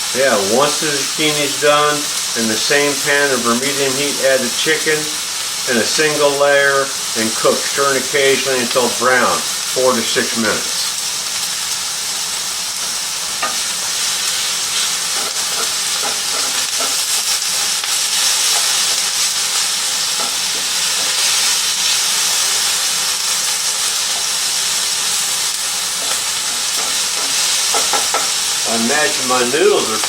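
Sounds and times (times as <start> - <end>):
chicken sizzling in frying pan: 0.0 - 30.0
utensil knocks stirring: 26.8 - 28.4.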